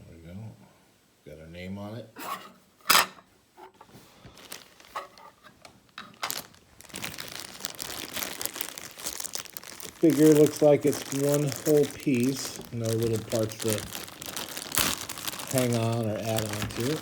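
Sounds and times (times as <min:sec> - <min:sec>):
plastic packaging crinkling: 0:04.3 - 0:17.0
plastic packaging clicks: 0:04.4 - 0:17.0.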